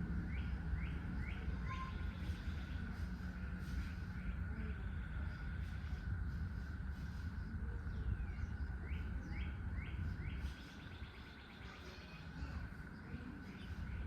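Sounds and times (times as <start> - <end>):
low rumble: 0.0 - 11.6
steady high hum: 0.0 - 14.0
bird chirping: 7.8 - 14.0.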